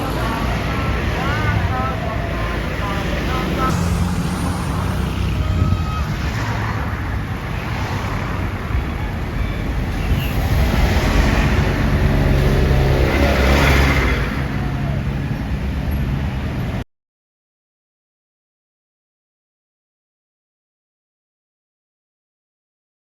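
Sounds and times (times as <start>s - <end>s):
heavy vehicle engine rumbling past: 0.0s - 16.8s
street traffic: 0.0s - 16.8s.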